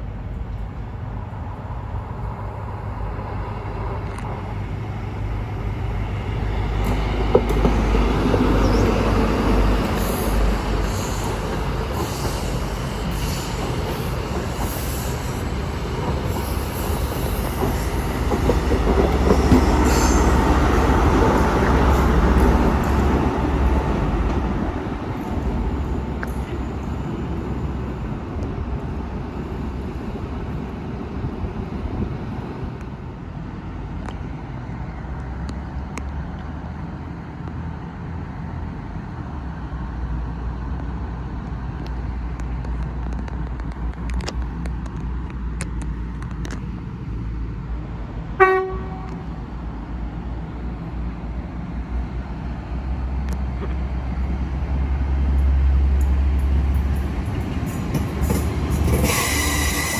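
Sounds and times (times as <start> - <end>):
train engine rumble: 0.0 - 59.9
train horn toot: 48.4 - 49.3.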